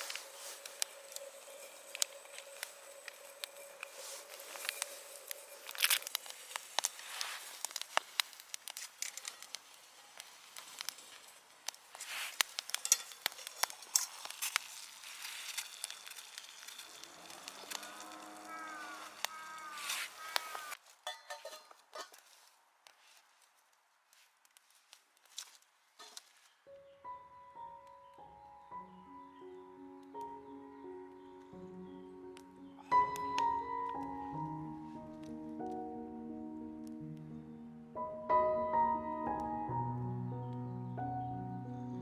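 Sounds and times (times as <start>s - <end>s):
wavering pitched squeal: 0.0s - 6.6s
food sizzling over campfire: 0.0s - 26.5s, 31.4s - 35.8s.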